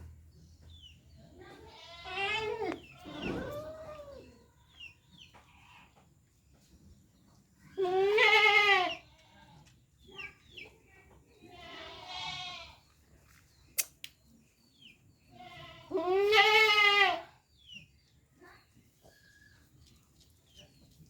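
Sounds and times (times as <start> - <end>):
goat bleating: 1.5 - 3.1, 7.8 - 9.5, 11.5 - 12.8, 15.4 - 17.3
sharp click: 13.8 - 14.2.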